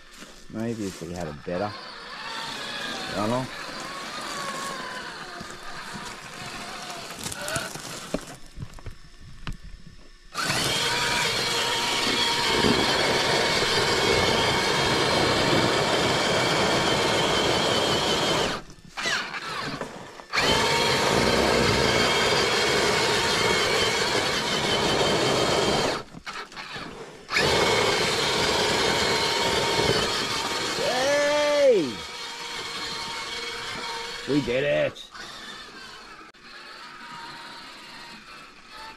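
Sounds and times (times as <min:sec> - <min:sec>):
rc car motor whining: 0:00.0 - 0:38.9.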